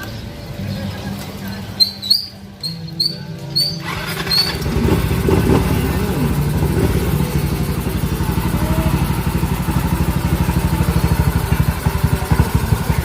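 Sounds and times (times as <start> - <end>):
scooter engine starting and idling: 2.9 - 13.0.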